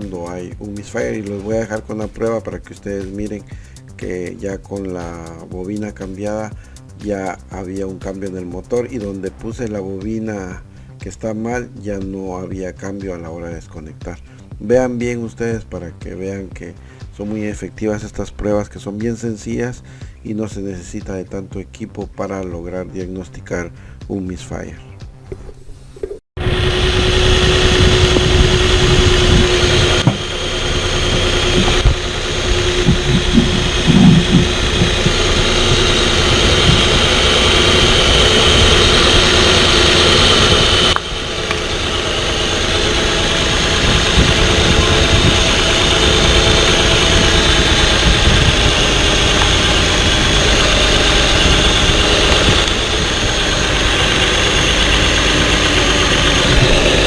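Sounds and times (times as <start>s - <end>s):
engine idling: 26.4s - 57.0s.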